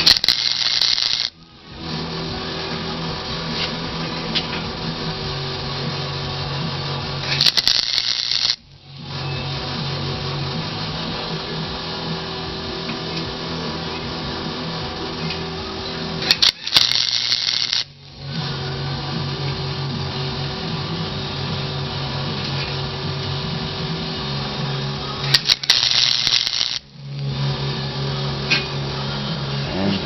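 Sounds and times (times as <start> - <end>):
crackling welding arc: 0.0 - 2.4, 3.0 - 9.6, 10.3 - 18.5, 23.6 - 27.3
radio music: 0.0 - 27.6.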